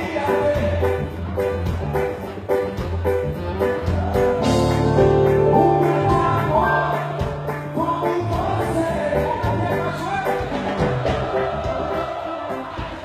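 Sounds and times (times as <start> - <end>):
man singing: 0.0 - 1.2, 5.5 - 10.5
live reggae band playing: 0.0 - 13.0.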